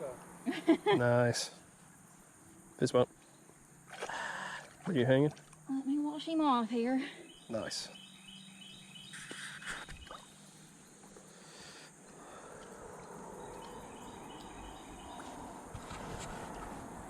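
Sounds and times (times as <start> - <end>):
insects chirping in pulses: 0.0 - 17.0
splashy rustle: 3.9 - 5.6.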